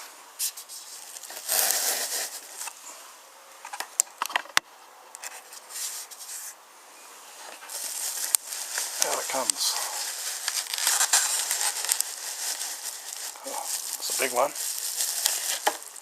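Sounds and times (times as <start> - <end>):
items scraping in cardboard box: 0.9 - 2.6, 7.4 - 16.0.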